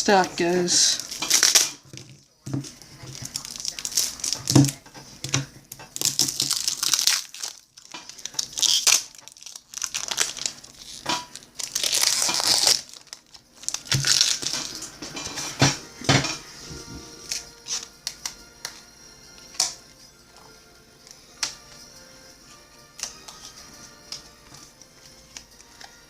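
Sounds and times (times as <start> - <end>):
cards and packaging crinkling: 0.1 - 15.0, 16.7 - 19.8, 21.1 - 26.0.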